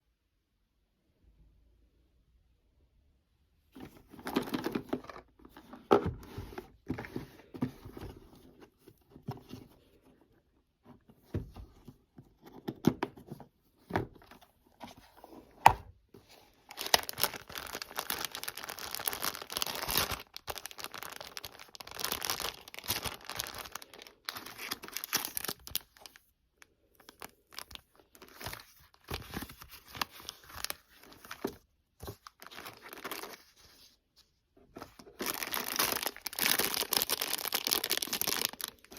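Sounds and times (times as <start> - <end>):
packaging tearing and crinkling: 16.7 - 26.0, 35.1 - 38.9.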